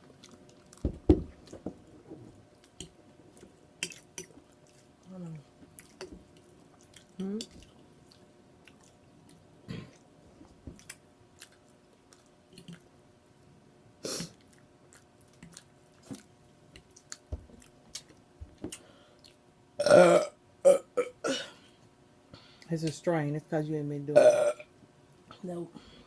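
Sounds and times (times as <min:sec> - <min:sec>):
wet chewing and lip-smacking: 0:05.7 - 0:10.1, 0:10.8 - 0:12.9, 0:14.3 - 0:19.4
person burping: 0:09.7 - 0:10.0, 0:19.8 - 0:21.6, 0:24.2 - 0:24.7.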